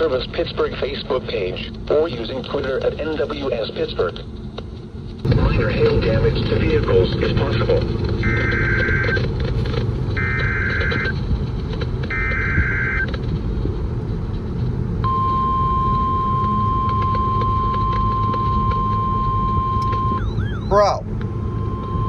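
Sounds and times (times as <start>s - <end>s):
car rumble: 0.0s - 22.0s
steady warning alarm tone: 5.3s - 11.2s, 12.0s - 13.1s, 15.0s - 22.0s.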